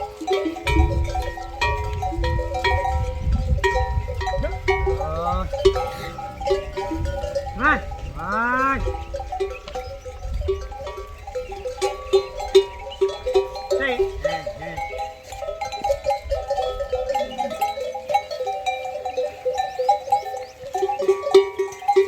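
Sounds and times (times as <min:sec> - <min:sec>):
camel bells clanking: 0:00.0 - 0:22.0
birds chirping: 0:04.4 - 0:17.9, 0:19.0 - 0:22.0.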